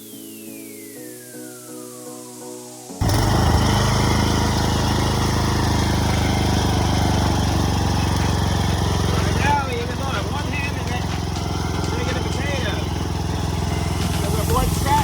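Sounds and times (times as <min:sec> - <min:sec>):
music: 0:00.0 - 0:03.0, 0:09.1 - 0:15.0
tractor engine running: 0:03.0 - 0:15.0.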